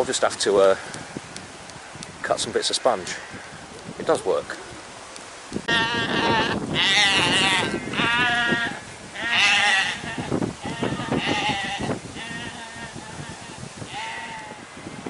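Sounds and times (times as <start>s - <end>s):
sheep bleating: 5.7s - 14.7s.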